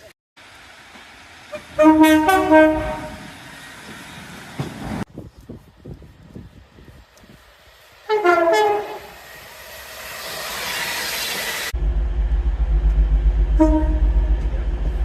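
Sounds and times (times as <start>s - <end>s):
train rumbling: 0.0s - 15.0s
train horn: 1.5s - 3.3s, 8.0s - 9.2s, 13.4s - 14.5s.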